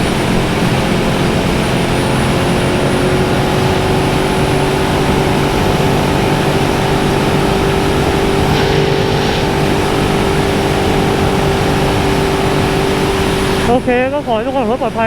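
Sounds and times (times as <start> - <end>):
wind and road rush: 3.6 - 14.0.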